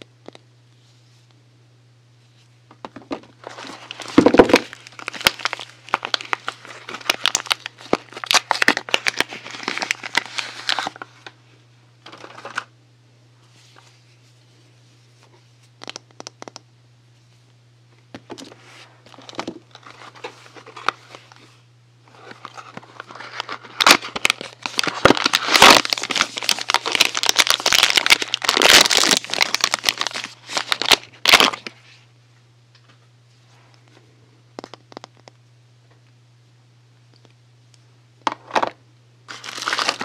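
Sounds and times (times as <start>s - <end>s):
packaging crinkling and tearing: 3.4s - 11.4s, 12.0s - 12.7s, 19.1s - 21.5s, 22.1s - 31.8s, 39.3s - 40.0s.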